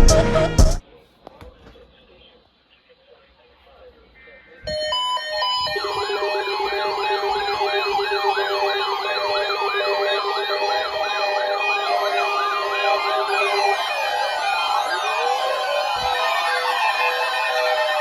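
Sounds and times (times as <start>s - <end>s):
yelping alert siren: 4.7s - 18.0s.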